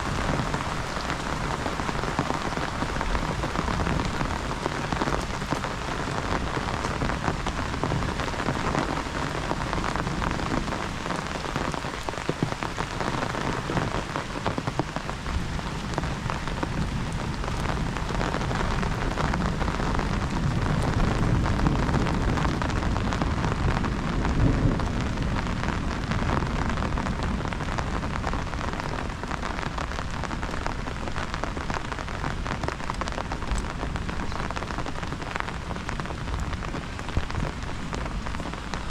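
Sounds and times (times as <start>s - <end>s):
low rumble of thunder: 0.0s - 29.3s
heavy rain falling: 0.0s - 38.9s.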